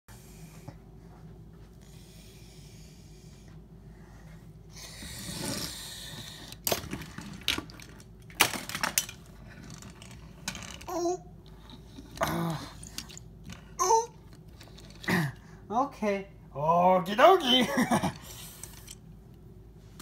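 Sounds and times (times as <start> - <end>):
low steady hum: 0.1 - 20.0
small hard objects clattering: 6.6 - 10.9.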